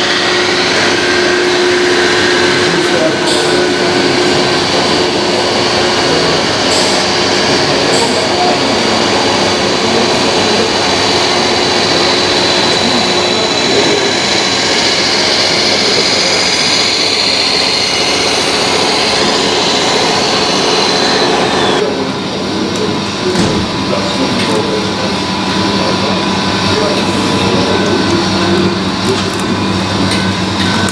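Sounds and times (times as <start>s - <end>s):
electric motor whine: 0.0s - 21.8s
loud mechanical noise: 0.0s - 30.9s.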